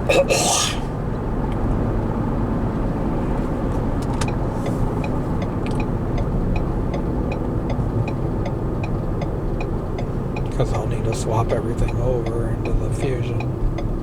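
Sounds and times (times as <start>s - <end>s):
car road and engine noise: 0.0s - 14.0s
light regular ticking: 3.9s - 14.0s.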